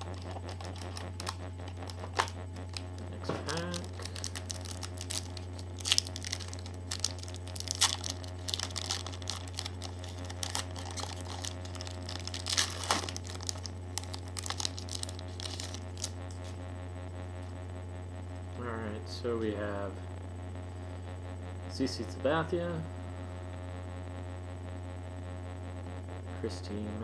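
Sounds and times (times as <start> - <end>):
wrapper crinkling and tearing: 0.0 - 16.4
steady low hum: 0.0 - 27.0.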